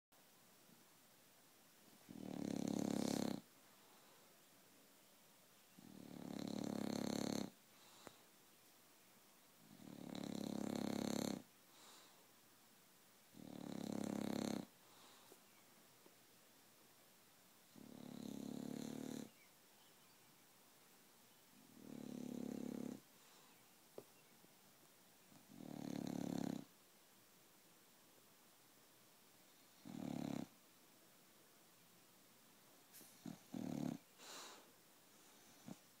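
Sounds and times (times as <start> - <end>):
dog snorting: 2.1 - 3.4, 21.8 - 23.0
dog snoring: 2.1 - 3.5, 5.8 - 8.1, 9.6 - 12.1, 13.3 - 14.7, 17.7 - 19.4, 21.7 - 23.4, 25.3 - 26.7, 29.6 - 30.6, 33.1 - 34.6, 35.2 - 35.8.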